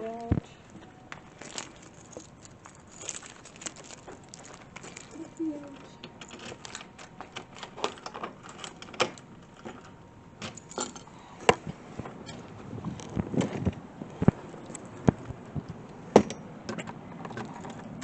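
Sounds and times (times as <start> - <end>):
keys jangling: 6.2 - 11.1.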